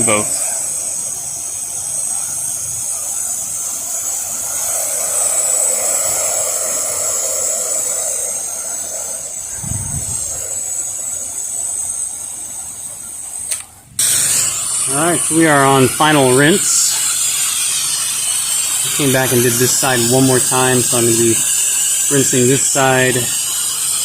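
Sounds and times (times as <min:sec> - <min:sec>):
pressure washer spraying: 0:00.0 - 0:24.0
short low rumble: 0:09.6 - 0:10.4.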